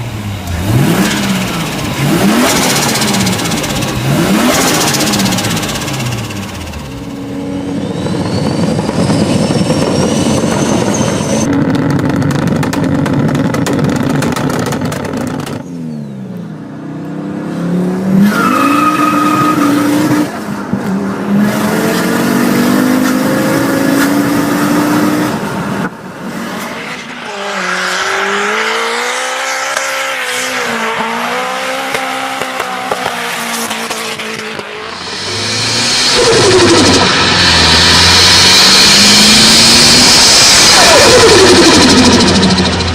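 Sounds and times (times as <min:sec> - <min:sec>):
car engines revving: 0:00.0 - 0:42.9
rising turbo whistle: 0:02.3 - 0:11.5, 0:34.8 - 0:42.9
steady high squeal: 0:02.6 - 0:11.5, 0:34.8 - 0:42.9.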